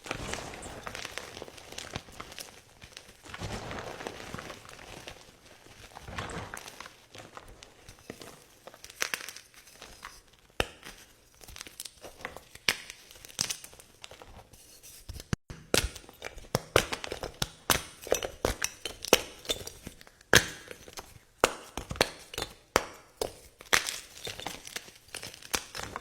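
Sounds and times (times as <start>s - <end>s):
chalk crumbling crunches: 0.0s - 10.2s.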